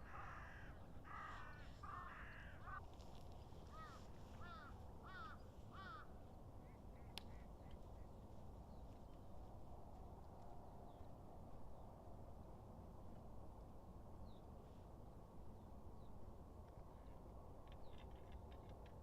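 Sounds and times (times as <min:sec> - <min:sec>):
crow cawing: 0:00.0 - 0:02.9, 0:03.7 - 0:06.2
faint outdoor background: 0:00.0 - 0:19.0.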